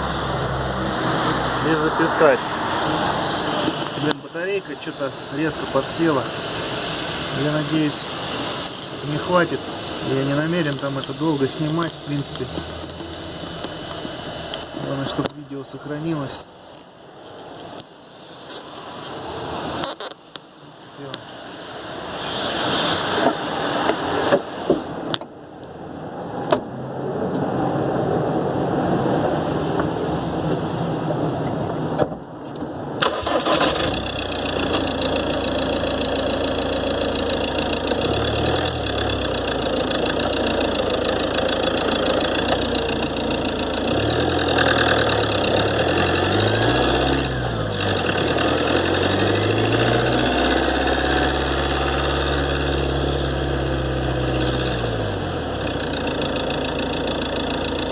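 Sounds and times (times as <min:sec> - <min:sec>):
diesel engine running: 0:00.0 - 0:16.0, 0:33.0 - 0:57.9.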